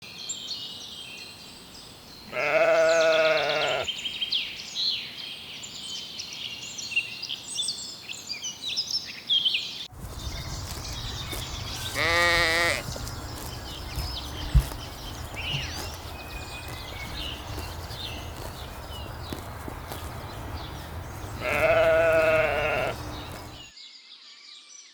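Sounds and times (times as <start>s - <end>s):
sheep bleating: 2.3s - 3.9s, 10.1s - 23.6s
high chirping: 10.0s - 23.7s.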